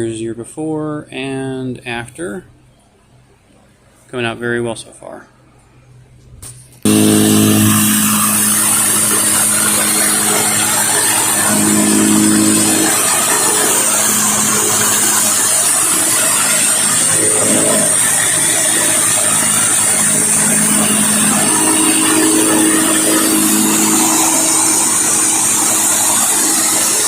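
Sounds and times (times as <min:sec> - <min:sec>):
pressure washer engine running: 0:06.9 - 0:27.0
water jet hissing: 0:06.9 - 0:27.0.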